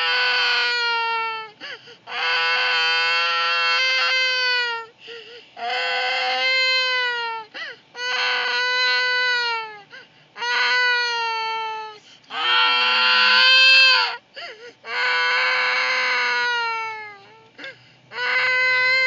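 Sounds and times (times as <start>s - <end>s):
young child wailing: 0.0s - 1.5s, 8.0s - 9.8s, 10.4s - 14.2s, 18.1s - 19.0s.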